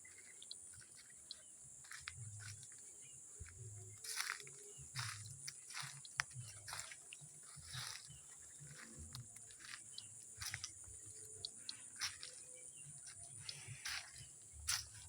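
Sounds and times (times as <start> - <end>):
insects buzzing: 0.0 - 15.0
crunching and rustling: 3.4 - 15.0.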